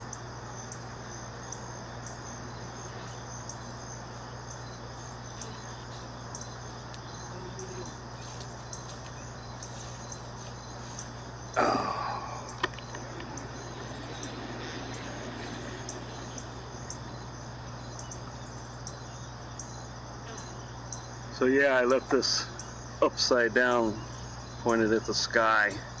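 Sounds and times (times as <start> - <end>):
insects chirping: 0.0 - 26.0
steady low hum: 0.0 - 26.0.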